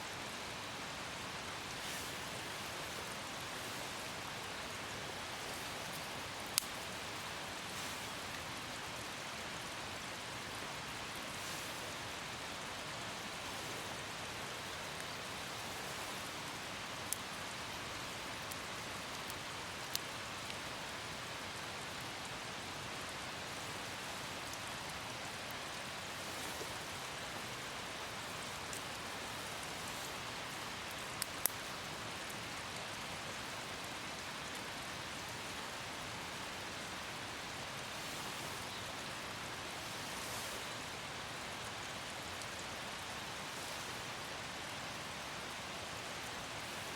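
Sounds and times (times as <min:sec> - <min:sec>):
light rain falling: 0:00.0 - 0:46.9
single raindrop ticks: 0:05.8 - 0:06.9, 0:30.4 - 0:31.7.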